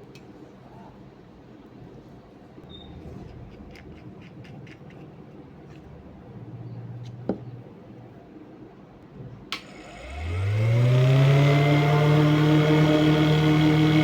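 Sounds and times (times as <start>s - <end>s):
motor whining: 9.6s - 14.0s.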